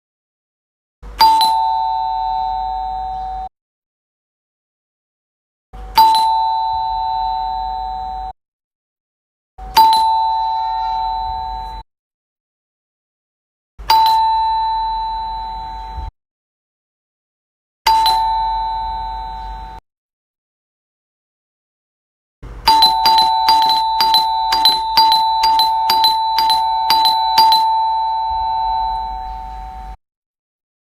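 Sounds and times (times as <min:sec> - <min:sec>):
doorbell chime: 0:01.2 - 0:03.5, 0:05.8 - 0:08.4, 0:09.6 - 0:11.8, 0:13.9 - 0:16.1, 0:17.9 - 0:19.8, 0:22.6 - 0:30.0.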